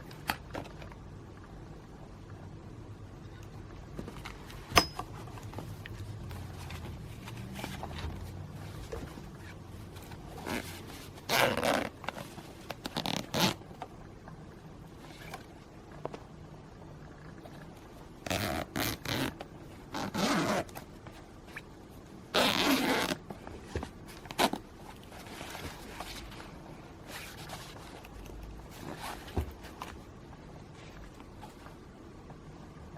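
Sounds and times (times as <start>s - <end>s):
handling rustles: 3.8s - 13.9s, 18.4s - 32.1s
zipper pulled: 6.3s - 13.6s, 18.2s - 20.8s, 22.3s - 23.3s, 27.1s - 29.9s.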